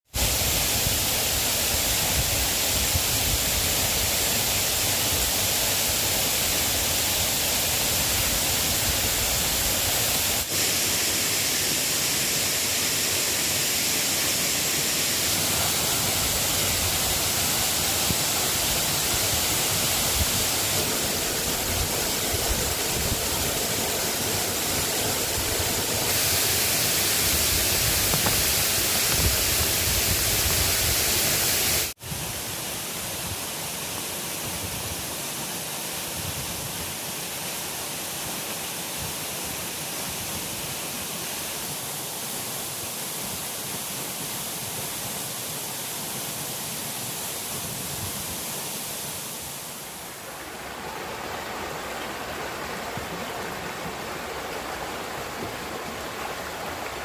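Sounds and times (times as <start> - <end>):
steady rain falling: 10.1 - 33.4, 42.5 - 57.0.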